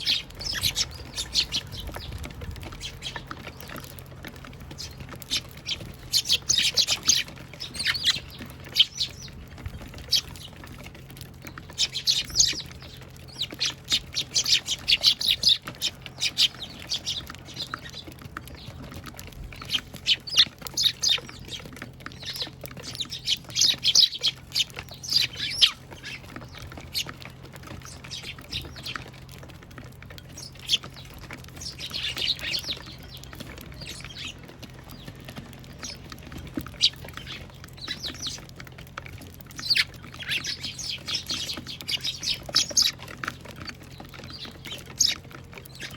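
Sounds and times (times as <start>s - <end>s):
flock of sparrows chirping: 0.0s - 45.9s.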